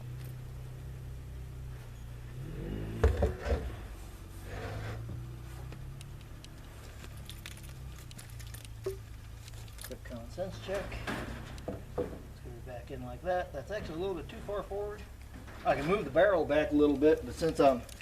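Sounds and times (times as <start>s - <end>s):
low steady hum: 0.0s - 18.0s
faint scrape: 3.3s - 5.1s
sharp knocks: 11.0s - 12.3s.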